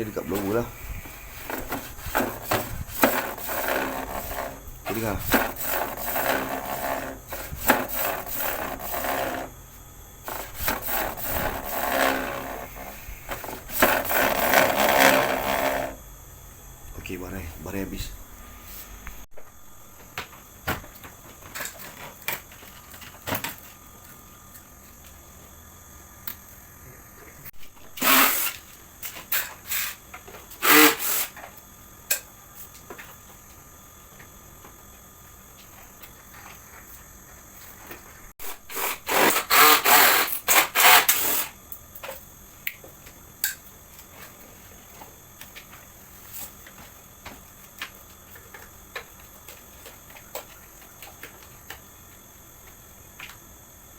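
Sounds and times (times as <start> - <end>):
loud plastic rasping: 1.4 - 9.5, 10.3 - 16.0, 30.6 - 31.3, 38.7 - 41.5.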